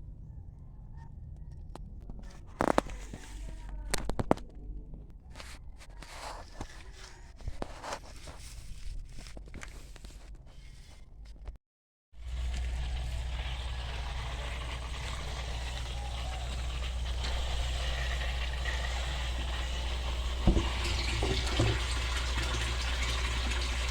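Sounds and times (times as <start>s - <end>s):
water pump humming: 12.2s - 23.9s
water rushing through pipe: 12.2s - 23.9s.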